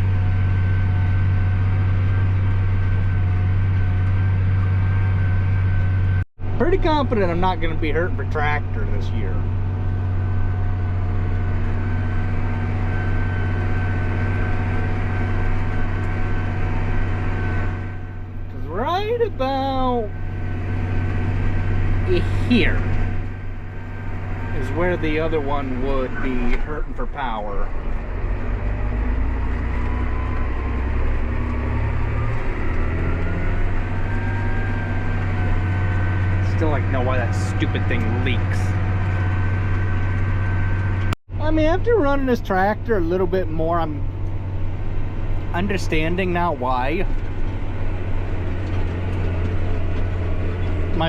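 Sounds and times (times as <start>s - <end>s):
faint high whine: 0.0s - 27.6s
tractor diesel engine droning: 0.0s - 51.0s.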